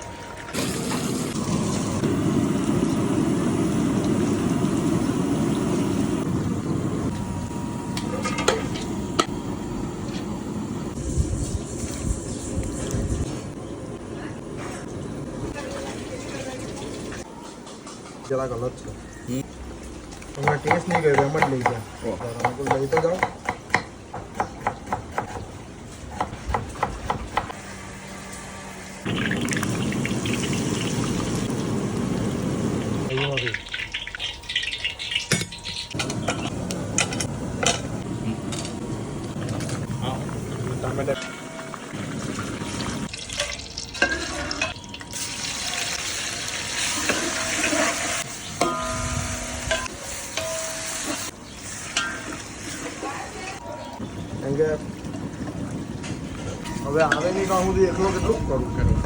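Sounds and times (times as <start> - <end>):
food sizzling in metal pot: 0.5 - 7.0, 29.0 - 54.2
ladle scraping pot: 43.4 - 45.3, 46.8 - 48.8.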